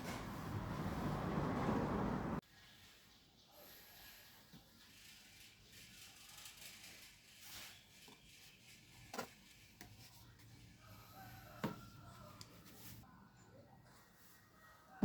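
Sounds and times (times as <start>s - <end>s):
faint rubbing and scratching: 4.2s - 13.1s.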